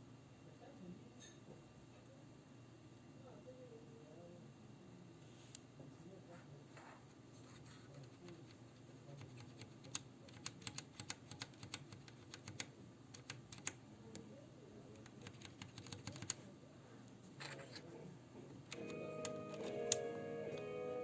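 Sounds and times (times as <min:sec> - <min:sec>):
mechanical keyboard key clicks: 0:09.3 - 0:14.2, 0:15.0 - 0:16.4.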